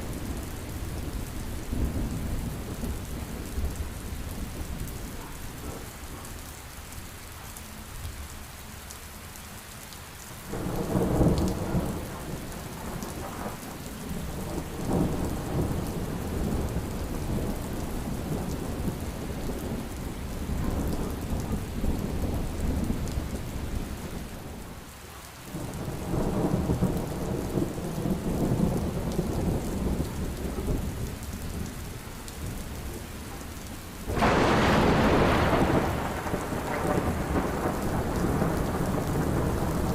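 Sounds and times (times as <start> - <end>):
heavy rain: 0.0 - 39.9
rolling thunder: 10.5 - 24.3, 25.6 - 31.7, 34.0 - 39.9.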